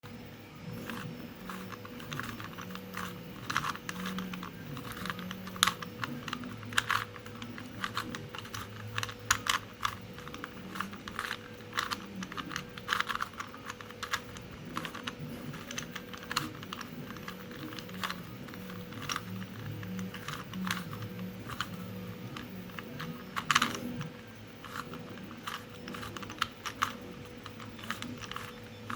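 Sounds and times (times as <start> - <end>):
servo motors humming in pulses: 0.0 - 28.9
plastic grippers clattering: 0.8 - 28.9.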